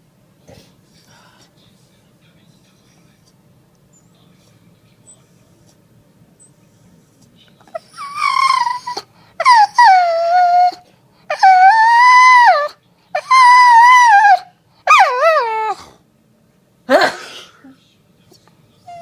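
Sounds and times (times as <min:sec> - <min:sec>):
dog's high wavering cries: 0:07.7 - 0:15.8.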